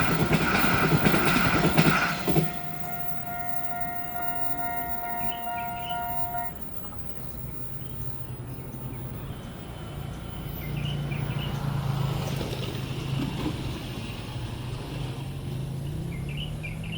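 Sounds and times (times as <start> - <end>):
vehicle engines humming: 0.0 - 16.9.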